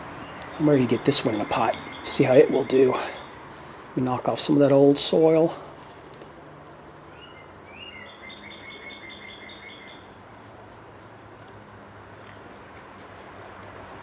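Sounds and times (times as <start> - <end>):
bird trilling: 0.2 - 3.5, 7.1 - 10.1.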